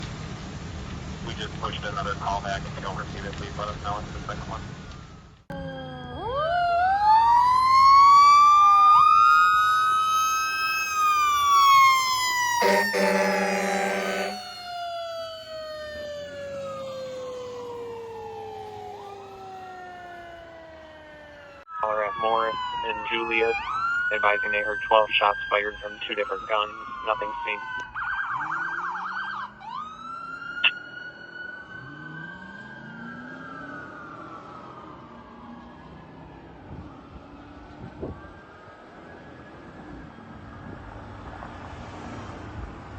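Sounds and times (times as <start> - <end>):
fire engine siren wailing: 4.6 - 42.9
second siren tone: 5.0 - 24.9
truck engine accelerating: 9.6 - 21.5.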